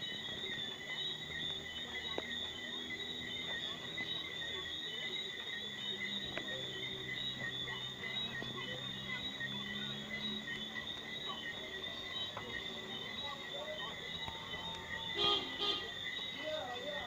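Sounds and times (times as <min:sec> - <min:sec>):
crickets trilling: 0:00.0 - 0:17.0
light ticks: 0:12.2 - 0:12.6.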